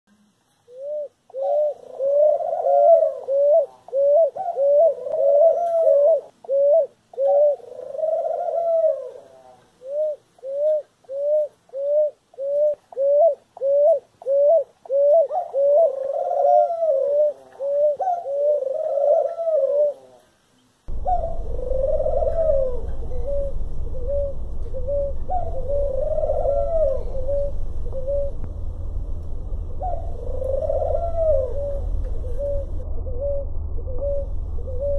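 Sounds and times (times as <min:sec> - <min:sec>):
doves cooing: 0:00.7 - 0:20.3, 0:20.9 - 0:34.9
steady low rumble: 0:20.9 - 0:34.9.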